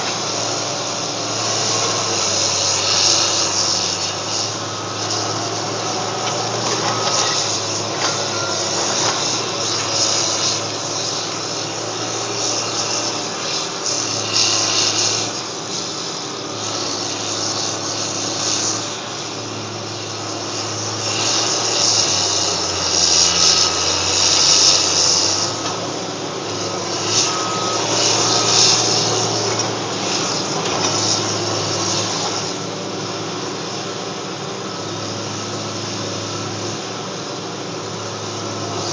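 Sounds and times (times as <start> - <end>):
diesel engine droning: 0.0 - 11.2.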